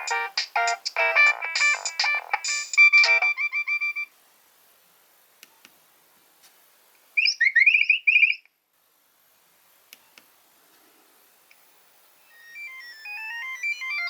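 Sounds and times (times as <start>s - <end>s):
phone ringtone chirping beeps: 0.0s - 4.0s, 12.5s - 14.0s.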